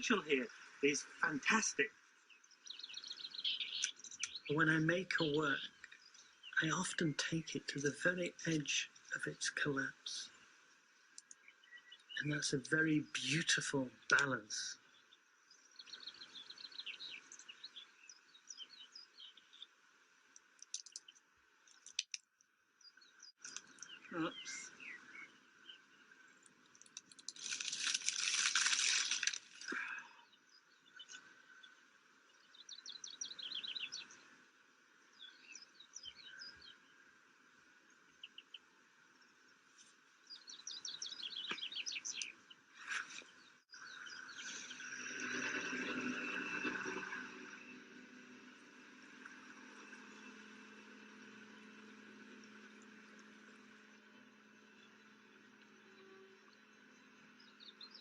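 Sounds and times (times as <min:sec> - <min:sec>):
small birds chirping: 0:00.0 - 0:46.6, 0:48.4 - 0:58.0
faint outdoor background noise: 0:00.0 - 0:58.0
songbirds singing: 0:00.0 - 0:58.0
faint high clicks: 0:20.3 - 0:22.3.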